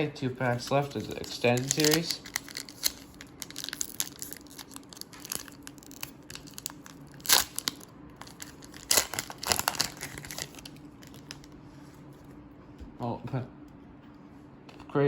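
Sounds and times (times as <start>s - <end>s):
wrapper crinkling: 0.8s - 11.6s
wrapper ripping: 1.1s - 11.5s.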